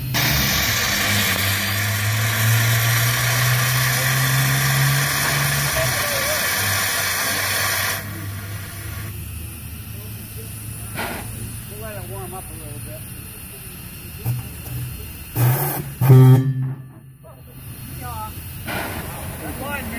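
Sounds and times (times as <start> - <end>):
large low-pitched steam whistle: 0.0 - 9.0, 14.2 - 17.2.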